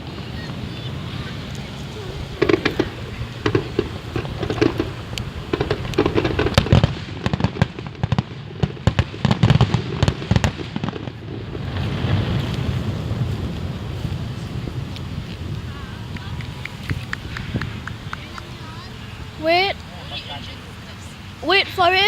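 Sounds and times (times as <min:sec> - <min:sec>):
fireworks bangs and cracks: 0:00.0 - 0:22.0.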